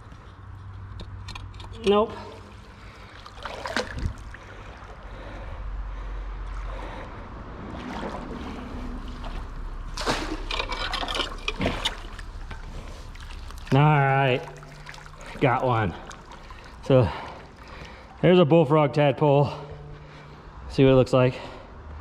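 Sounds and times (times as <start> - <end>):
creek water splashing: 1.8 - 18.5.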